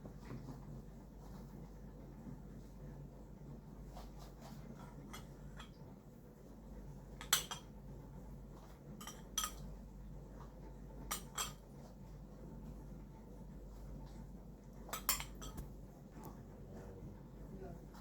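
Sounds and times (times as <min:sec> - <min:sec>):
faint steady hum: 0:00.0 - 0:18.0
metal utensil clinking dishware: 0:09.0 - 0:09.6, 0:11.1 - 0:11.6, 0:15.0 - 0:15.6.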